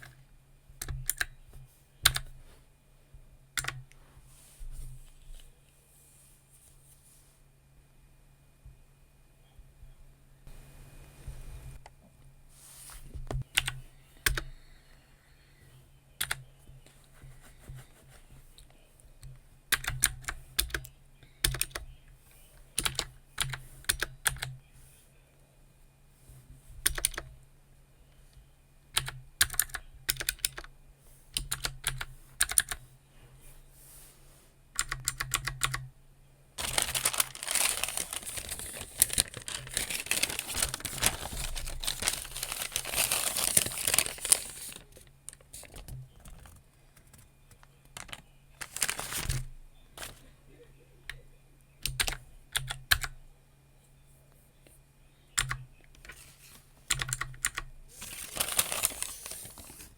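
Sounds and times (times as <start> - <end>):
computer keyboard typing: 0.8 - 1.4, 2.0 - 2.3, 3.6 - 3.8, 13.5 - 14.5, 16.2 - 16.5, 19.7 - 21.9, 22.8 - 24.6, 26.8 - 27.3, 29.0 - 30.7, 31.4 - 32.8, 34.8 - 35.9, 51.8 - 53.1, 55.4 - 56.1, 56.9 - 59.5.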